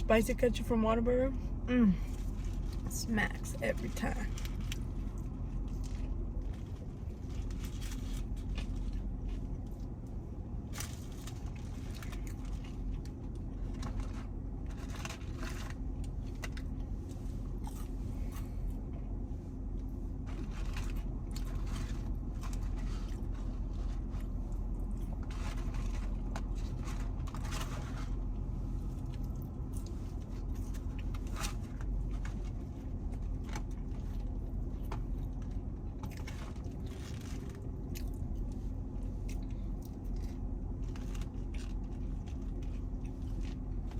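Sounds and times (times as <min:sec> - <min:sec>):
steady low hum: 0:00.0 - 0:43.9
person eating crunchy food: 0:10.7 - 0:19.0, 0:28.8 - 0:43.9.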